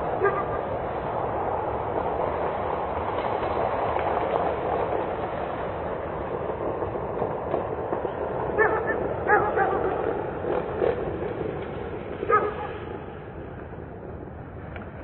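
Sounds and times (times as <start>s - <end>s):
distant traffic hum: 0.0s - 15.0s
dog barking: 0.2s - 0.6s, 8.6s - 10.0s, 12.3s - 12.8s.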